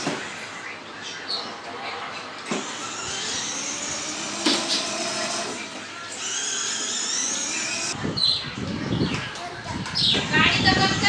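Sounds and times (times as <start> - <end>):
small electric motor whining: 2.5 - 8.0.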